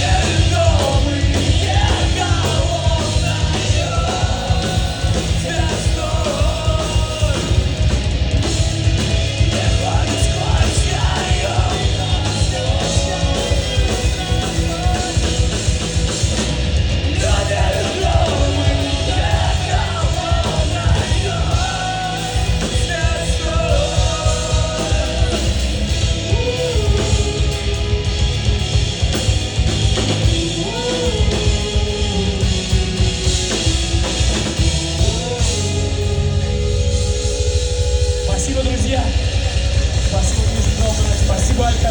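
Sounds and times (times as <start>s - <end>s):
driving drum kit: 0.0s - 41.9s
punk rock band playing: 0.0s - 41.9s
shouted vocals: 17.0s - 28.0s.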